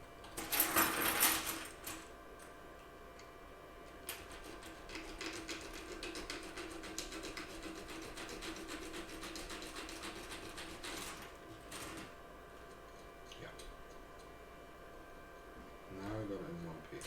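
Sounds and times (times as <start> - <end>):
sandpaper rubbing on plastic: 5.0 - 11.1.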